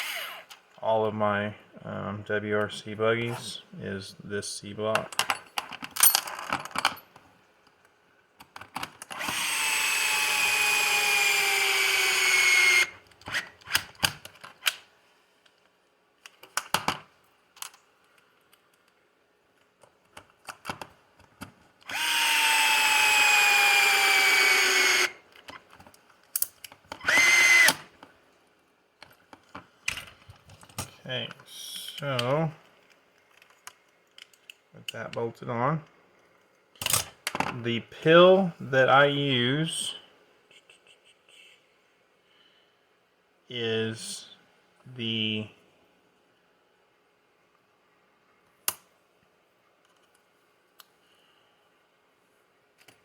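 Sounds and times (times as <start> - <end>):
electric screwdriver whining: 0.0 - 0.5, 9.1 - 13.9, 21.8 - 25.2, 27.0 - 27.9.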